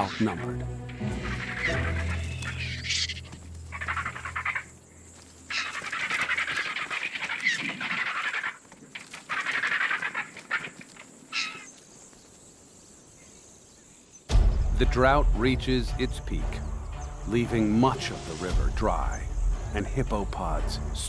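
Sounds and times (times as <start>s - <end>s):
vultures hissing and cackling: 0.0s - 4.8s, 5.5s - 11.7s.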